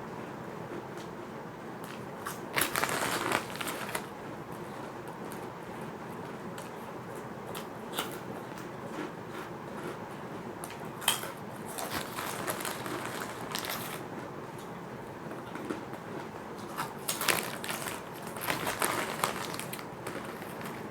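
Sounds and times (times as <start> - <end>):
crackers being chewed: 0.7 - 20.9.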